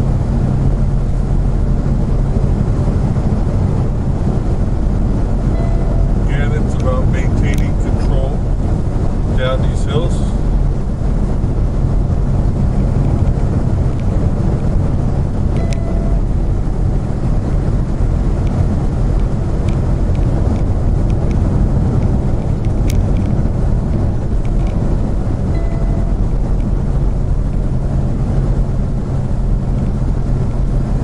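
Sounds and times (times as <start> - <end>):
vehicle engine and road noise: 0.0 - 31.0.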